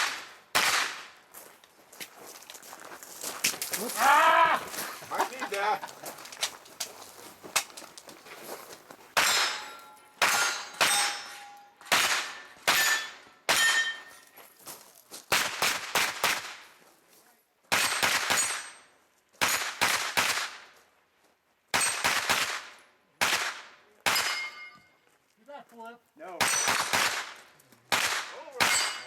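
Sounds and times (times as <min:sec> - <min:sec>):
bullets ringing on steel targets: 0:09.2 - 0:14.4, 0:17.7 - 0:19.7, 0:21.8 - 0:22.2, 0:24.1 - 0:24.9, 0:26.4 - 0:27.0, 0:28.5 - 0:29.0
rapid gunshots: 0:19.4 - 0:20.6, 0:26.4 - 0:29.0.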